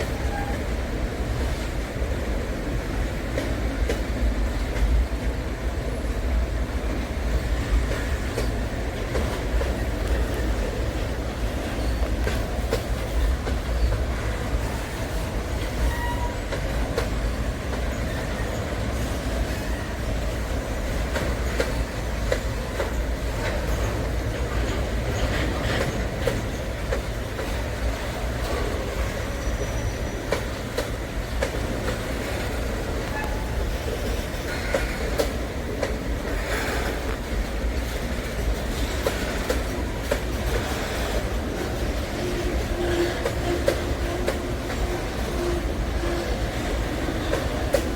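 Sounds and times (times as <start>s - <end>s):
freight train rumbling over bridge: 0.0s - 47.9s
train wheels clattering: 0.0s - 47.9s
faint wheel squeaks: 11.6s - 26.8s.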